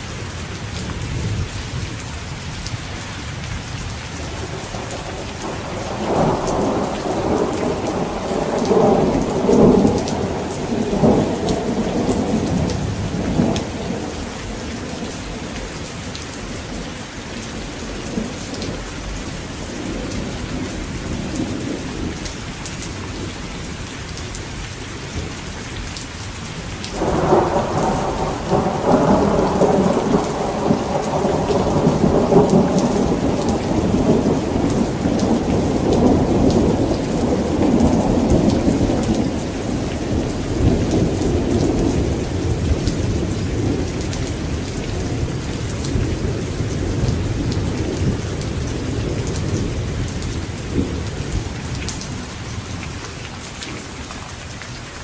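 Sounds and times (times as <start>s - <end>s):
steady rain falling: 0.0s - 55.0s
thunder rumbling: 4.3s - 15.7s, 26.9s - 52.8s.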